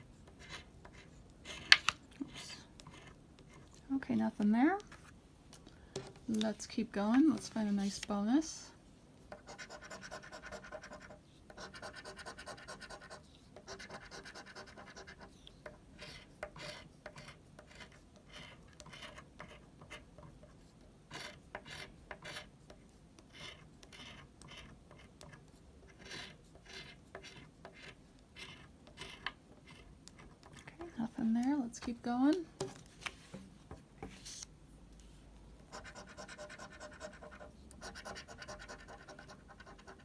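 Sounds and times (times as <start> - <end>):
scratching a lottery ticket: 23.3 - 30.9.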